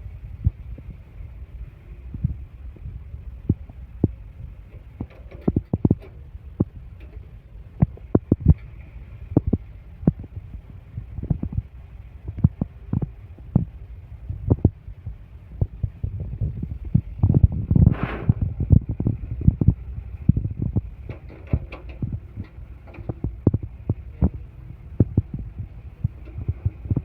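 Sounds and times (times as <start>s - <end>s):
heavy machinery rumbling: 0.0s - 27.0s
sharp knocks and clunks: 21.0s - 23.6s.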